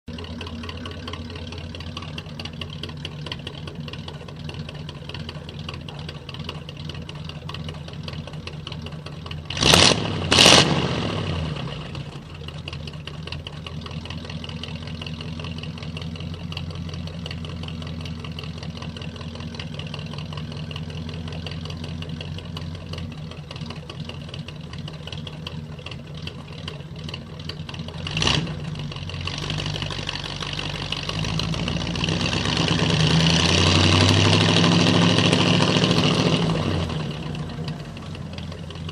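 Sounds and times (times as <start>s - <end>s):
car engine idling: 0.0s - 38.9s
loud engine bursts: 9.5s - 12.1s.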